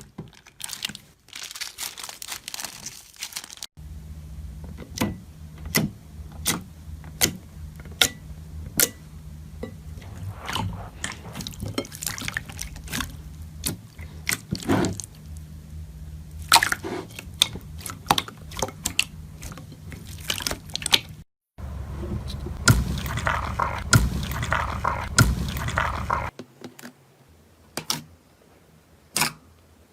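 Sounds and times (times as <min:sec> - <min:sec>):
low steady hum: 0:03.8 - 0:20.6, 0:21.6 - 0:26.3.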